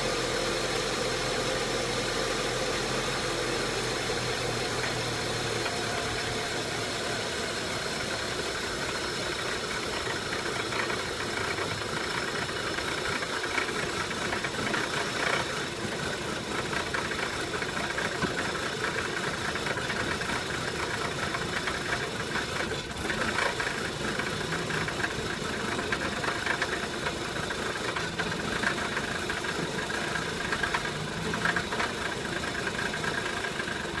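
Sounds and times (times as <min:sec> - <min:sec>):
car engine idling roughly: 0:00.0 - 0:34.0.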